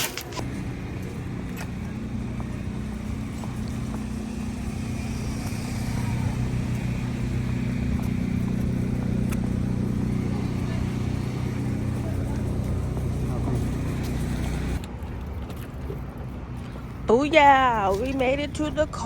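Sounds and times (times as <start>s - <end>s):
car engine running: 0.0s - 14.8s.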